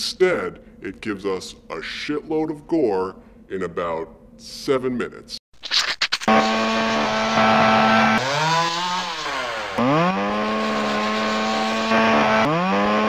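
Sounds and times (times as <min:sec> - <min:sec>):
chainsaw engine revving: 0:06.3 - 0:13.0.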